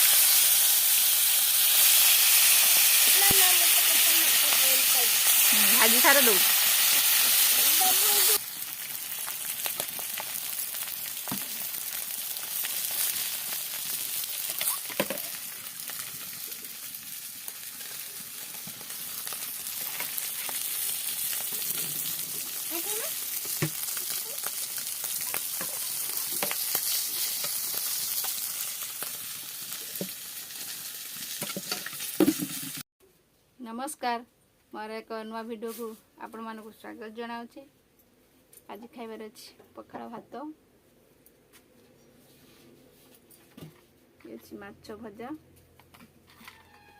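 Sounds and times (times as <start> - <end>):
food sizzling in hot oil: 0.0 - 32.8.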